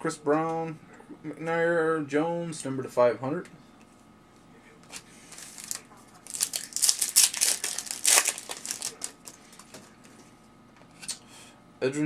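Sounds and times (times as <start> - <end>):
foil wrapper crinkling: 5.3 - 9.9.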